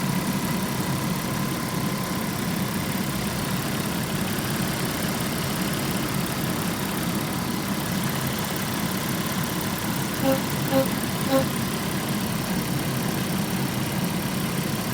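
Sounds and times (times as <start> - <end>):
car engine idling: 0.2 - 14.9
faint high tone: 10.2 - 11.6
trumpeting or rubbing noise: 10.2 - 11.6.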